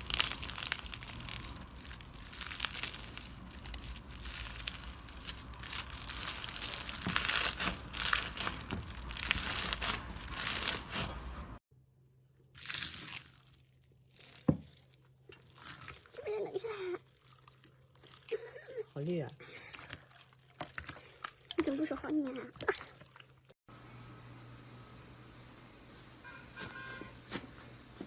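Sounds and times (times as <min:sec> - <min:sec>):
slime crackling and crunching: 0:00.0 - 0:11.6, 0:12.6 - 0:19.2.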